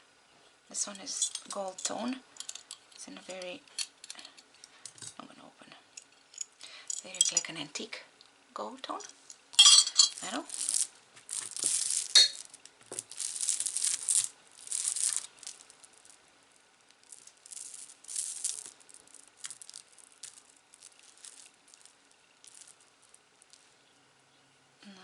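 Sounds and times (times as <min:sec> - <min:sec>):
beads and chains rattling: 0:06.0 - 0:07.5, 0:09.0 - 0:23.7.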